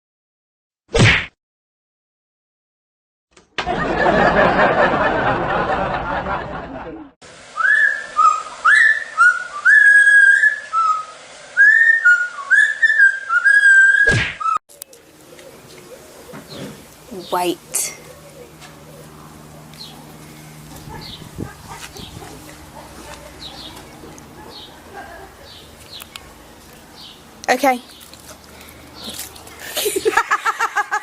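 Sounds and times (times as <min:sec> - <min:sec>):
high whistled notes swooping up: 0:07.5 - 0:14.6.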